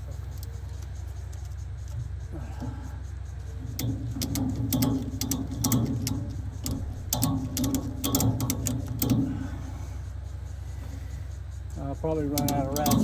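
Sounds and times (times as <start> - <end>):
steady low hum: 0.0 - 13.0
ratchet strap clicking: 3.4 - 11.0, 12.0 - 13.0.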